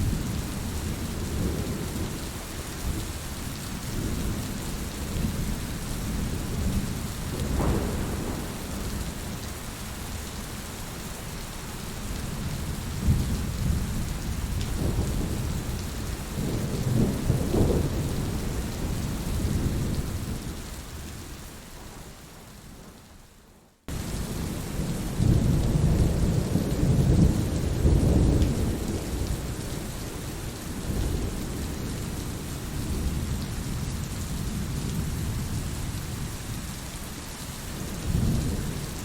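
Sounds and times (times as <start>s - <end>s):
steady rain: 0.0s - 39.0s
low rolling thunder: 3.8s - 10.2s, 12.1s - 23.0s, 23.9s - 36.5s, 37.8s - 39.0s.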